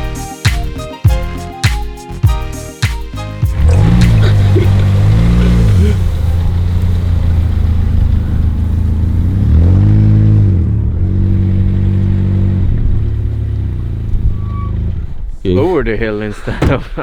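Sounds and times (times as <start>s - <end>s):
car engine running: 3.5s - 17.0s.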